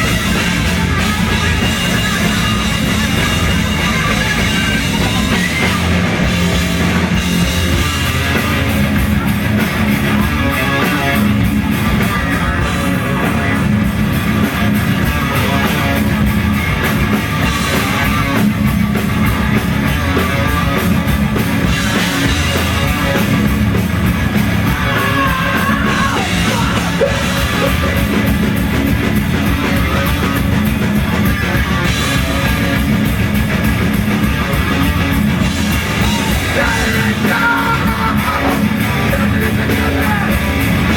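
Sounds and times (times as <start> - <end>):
drums keeping a steady beat: 0.0 - 40.9
rock band playing live: 0.0 - 40.9
person singing: 24.6 - 28.0, 35.9 - 40.6.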